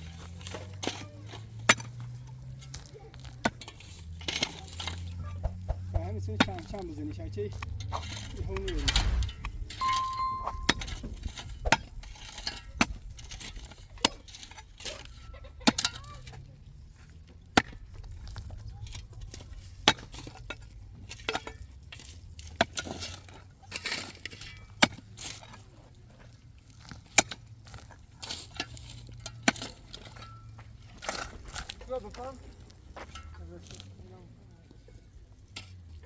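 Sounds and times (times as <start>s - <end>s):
low steady rumble: 3.5s - 15.3s, 16.4s - 22.5s.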